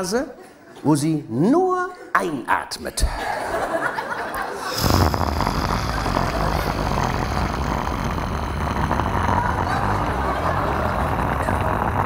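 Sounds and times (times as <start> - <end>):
man imitating snoring: 4.6 - 12.0.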